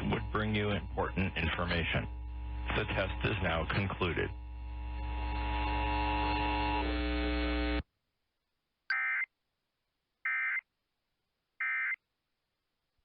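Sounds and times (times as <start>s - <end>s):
steady hum: 0.0s - 7.8s.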